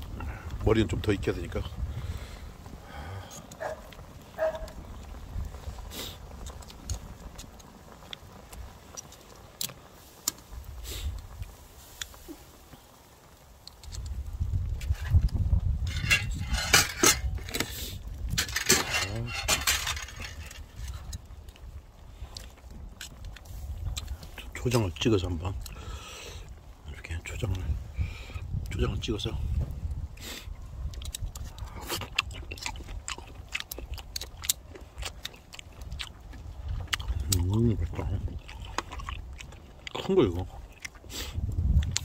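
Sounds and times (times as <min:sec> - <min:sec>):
close chewing with smacking: 0:03.3 - 0:12.9, 0:20.7 - 0:25.8, 0:30.5 - 0:42.0
metal utensils clinking on cookware: 0:15.9 - 0:17.6, 0:18.3 - 0:20.6.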